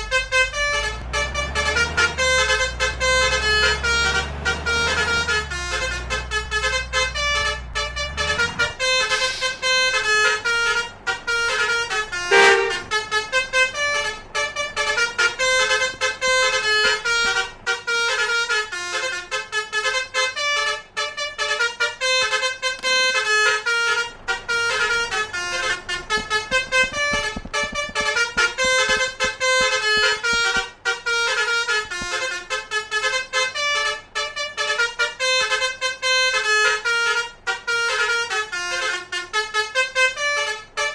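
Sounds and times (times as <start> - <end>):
multi-tone bus horns melody: 0.0 - 40.9
low rumble: 5.1 - 11.0.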